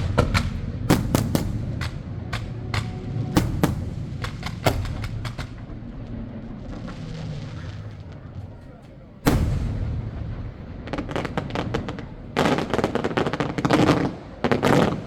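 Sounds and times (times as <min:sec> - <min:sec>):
fireworks bangs and cracks: 0:00.0 - 0:15.0.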